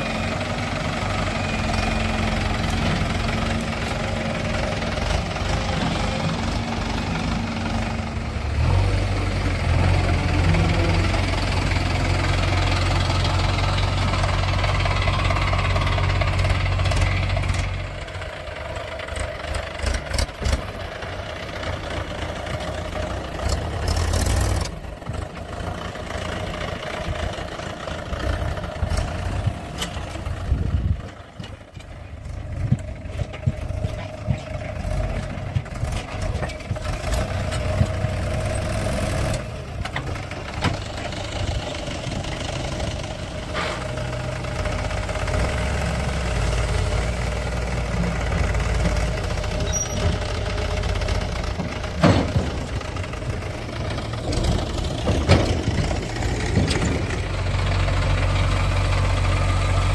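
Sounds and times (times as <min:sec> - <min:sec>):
diesel engine running: 0:00.0 - 0:59.9
machine knocks and clatter: 0:51.2 - 0:57.6.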